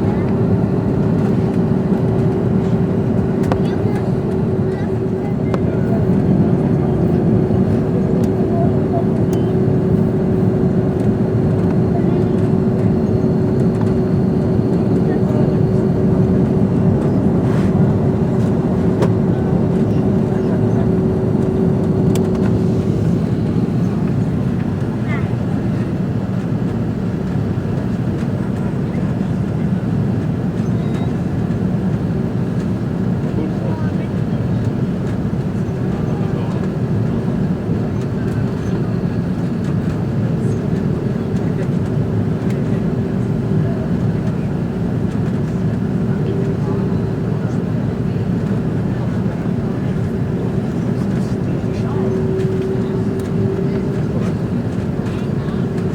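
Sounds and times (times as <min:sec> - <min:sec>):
airliner cabin roar: 0:00.0 - 0:55.9
jet engine and airflow rush: 0:00.0 - 0:55.9.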